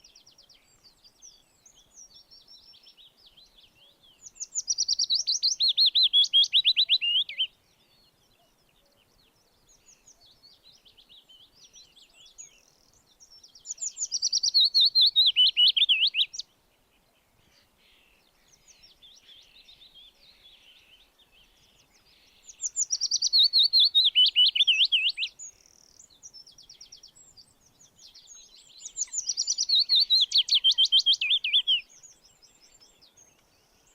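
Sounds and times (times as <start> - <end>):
soft bird chirps: 0.0 - 33.9
songbird trilling: 4.2 - 7.5, 13.6 - 16.5, 17.5 - 33.9.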